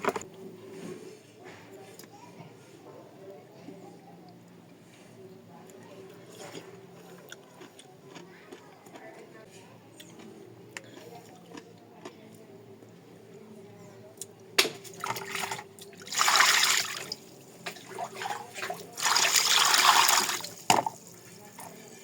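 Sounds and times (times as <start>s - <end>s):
water splashing: 15.0s - 20.6s.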